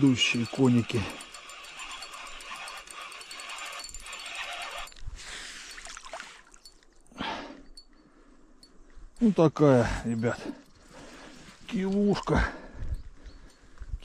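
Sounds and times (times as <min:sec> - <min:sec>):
fishing reel ticking whir: 0:00.0 - 0:06.0.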